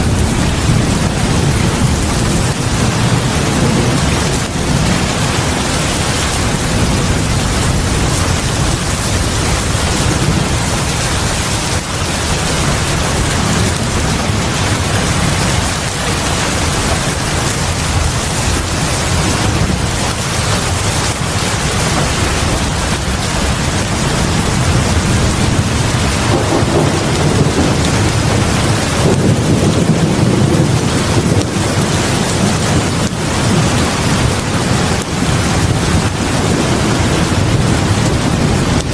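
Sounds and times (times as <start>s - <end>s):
heavy rain pouring on porch: 0.0s - 38.9s.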